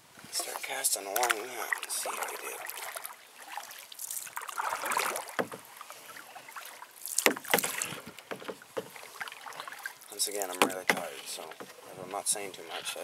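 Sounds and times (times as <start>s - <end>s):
fishing gear clicks and knocks: 7.1s - 13.0s.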